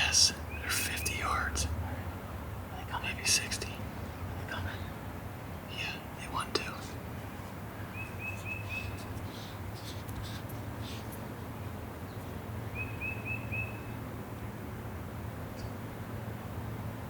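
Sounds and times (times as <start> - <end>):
faint bird chirps: 0.0 - 1.6, 7.8 - 11.2, 12.1 - 14.0
low background rumble: 0.0 - 12.8.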